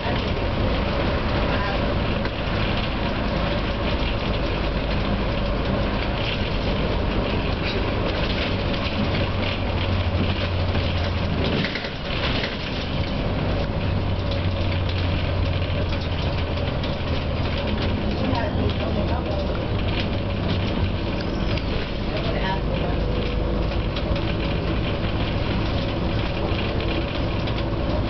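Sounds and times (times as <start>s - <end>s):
bus engine hum: 0.0s - 28.0s
road and rattle noise: 0.0s - 28.0s.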